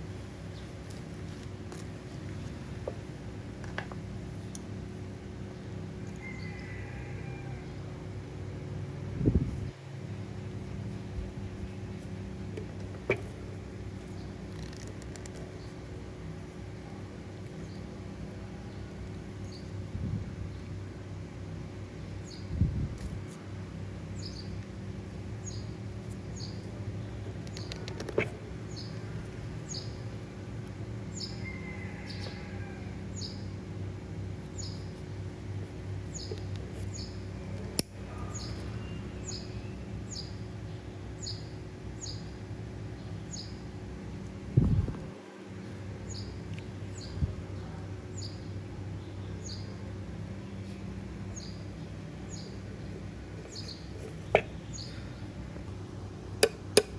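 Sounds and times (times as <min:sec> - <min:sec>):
steady low hum: 0:00.0 - 0:56.9
bird chirping: 0:51.3 - 0:55.3.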